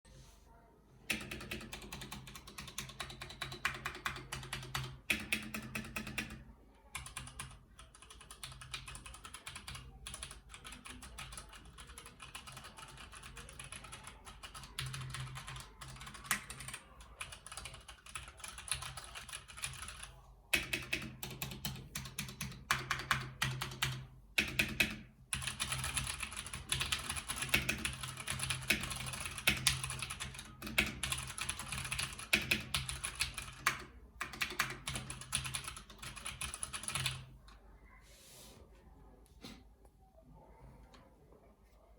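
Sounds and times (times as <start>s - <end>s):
fast typing on mechanical keyboard: 1.1s - 37.3s
faint low hum: 32.8s - 41.9s.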